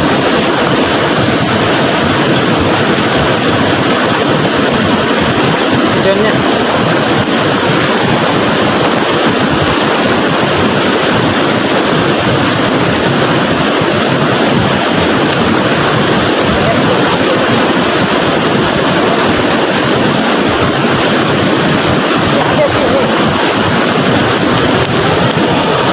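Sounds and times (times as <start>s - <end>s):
floodwater roaring: 0.0s - 25.9s.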